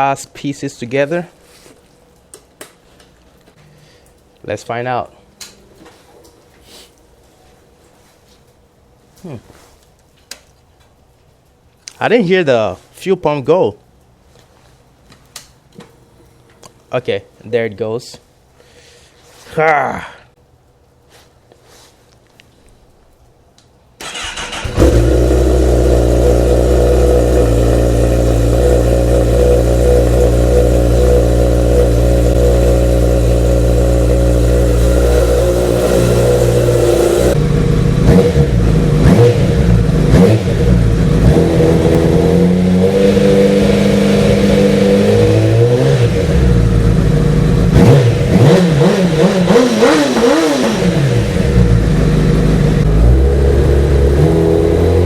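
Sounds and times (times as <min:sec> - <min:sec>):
motorcycle engine idling and revving: 0:24.0 - 0:55.0.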